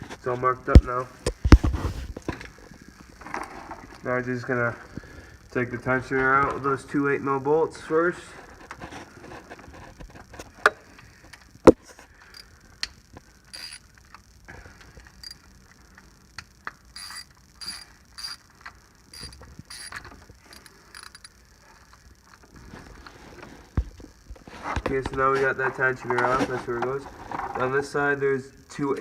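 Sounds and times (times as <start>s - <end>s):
ratchet wrench clicking: 13.5s - 13.9s, 15.1s - 15.4s, 16.4s - 18.5s, 19.1s - 21.4s.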